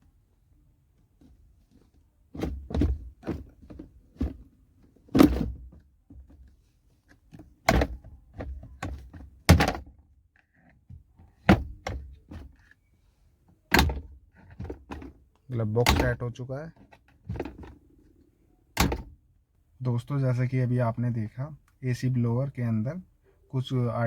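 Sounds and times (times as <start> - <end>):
plastic glove box knocks and clicks: 2.4 - 4.4, 5.1 - 6.4, 7.6 - 10.0, 10.9 - 12.5, 13.7 - 15.2, 15.8 - 16.2, 17.2 - 17.8, 18.8 - 19.2.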